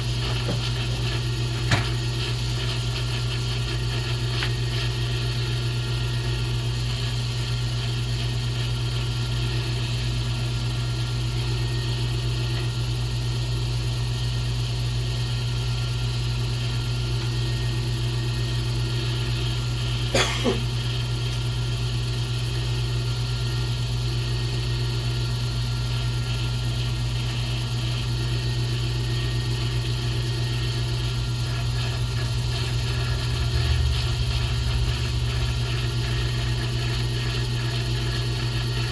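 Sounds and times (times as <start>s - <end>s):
lathe motor humming: 0.0s - 7.6s, 24.5s - 38.9s.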